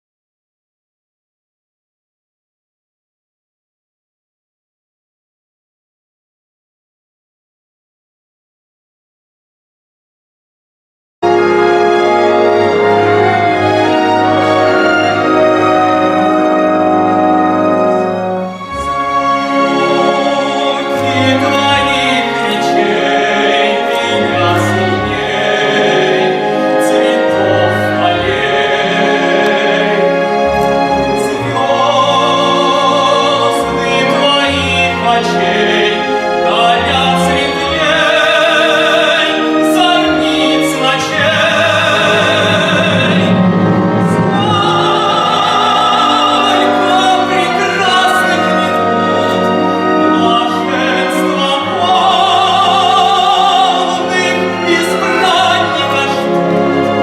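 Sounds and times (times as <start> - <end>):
instrumental accompaniment: 11.2 - 57.0
operatic singing with vibrato: 11.3 - 57.0.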